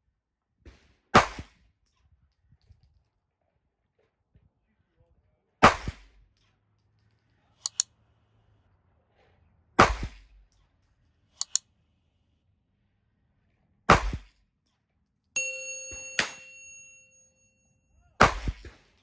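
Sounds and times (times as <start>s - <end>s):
pistol shots: 1.2s - 1.5s, 5.6s - 6.1s, 9.8s - 10.3s, 13.9s - 14.3s, 18.2s - 18.8s
sharp high clicks: 7.6s - 7.8s, 11.4s - 11.6s.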